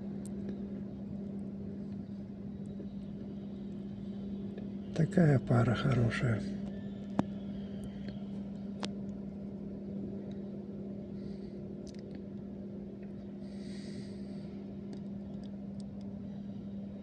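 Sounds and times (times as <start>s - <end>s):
machine hum: 0.0s - 17.0s
faint clicks: 11.8s - 12.2s, 14.9s - 16.2s.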